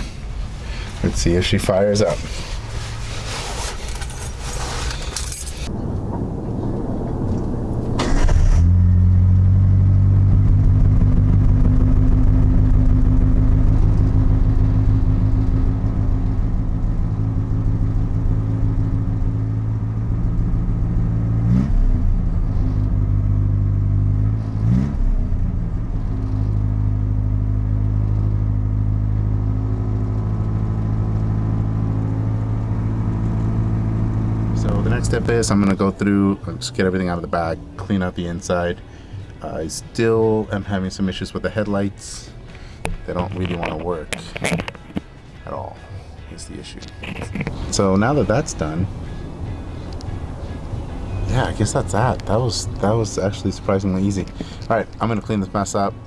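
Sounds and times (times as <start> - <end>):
engine revving: 5.9 - 38.4
engine idling: 32.2 - 56.0.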